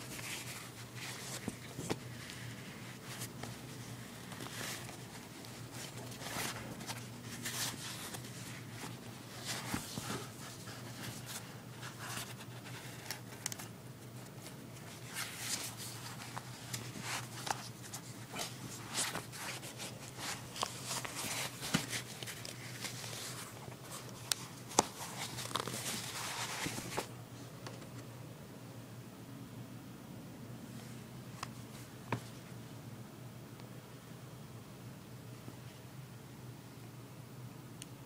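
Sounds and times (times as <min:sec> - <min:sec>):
handling rustles and clicks: 0:00.0 - 0:28.0
steady low hum: 0:00.0 - 0:38.0.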